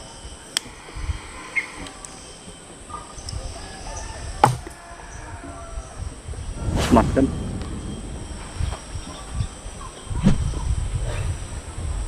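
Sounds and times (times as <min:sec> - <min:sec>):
low rumble: 0:06.5 - 0:09.7.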